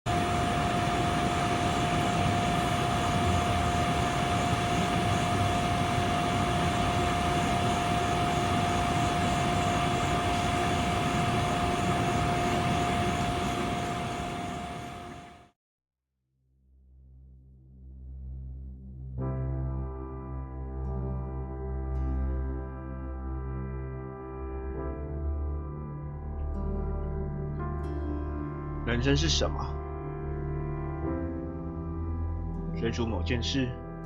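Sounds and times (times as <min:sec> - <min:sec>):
broad noisy rush: 0:00.1 - 0:15.3
high hum: 0:00.1 - 0:15.5
mechanical drone: 0:00.1 - 0:15.5.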